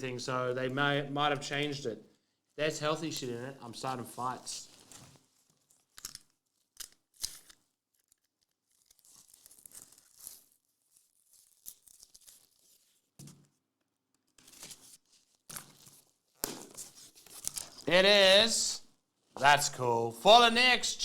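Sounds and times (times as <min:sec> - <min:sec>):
packaging crackling and rustling: 0:04.6 - 0:13.1, 0:14.3 - 0:17.9
packaging being torn: 0:06.8 - 0:10.6, 0:15.5 - 0:17.8.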